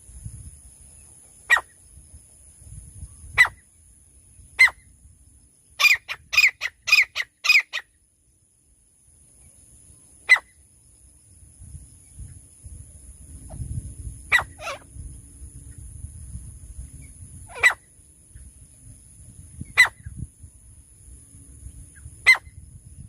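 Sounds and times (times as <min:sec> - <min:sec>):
francolin calling: 0:01.0 - 0:01.9, 0:03.0 - 0:08.1, 0:09.4 - 0:10.9, 0:13.5 - 0:16.0, 0:16.9 - 0:20.4, 0:21.6 - 0:23.0.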